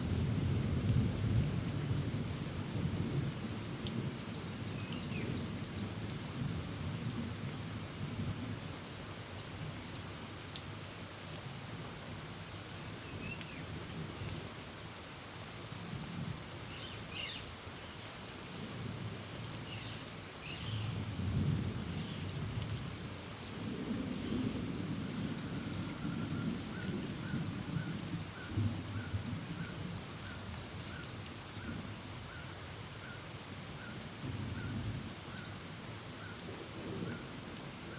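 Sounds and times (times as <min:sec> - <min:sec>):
heavy rain on a tin roof: 0:00.0 - 0:37.9.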